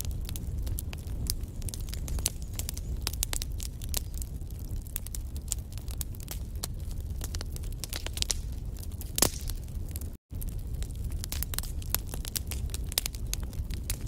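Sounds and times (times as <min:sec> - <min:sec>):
low rumble of flames: 0:00.0 - 0:14.0
wood fire crackling: 0:00.0 - 0:14.0.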